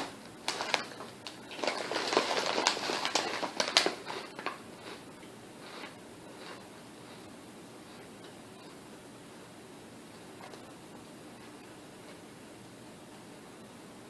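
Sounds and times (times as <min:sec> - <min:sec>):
potato chips crunching: 0:00.0 - 0:05.1.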